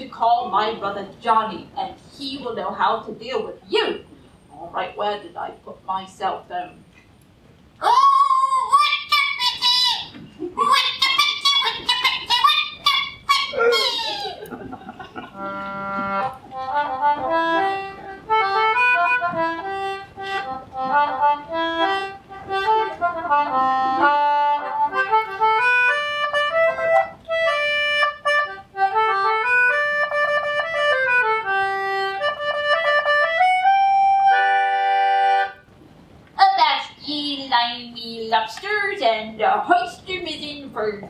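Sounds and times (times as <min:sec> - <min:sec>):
reedy instrument melody: 0:09.1 - 0:14.4, 0:15.3 - 0:35.7.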